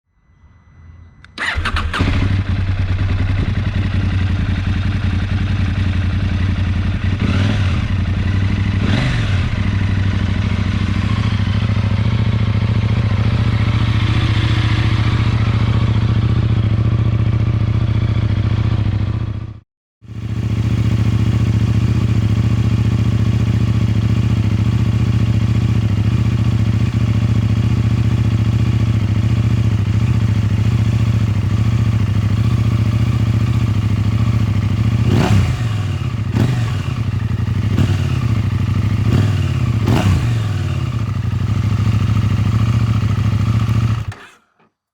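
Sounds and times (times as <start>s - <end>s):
engine throttle blips: 1.2s - 8.0s, 11.4s - 18.1s
motorcycle engine idling: 1.3s - 44.4s.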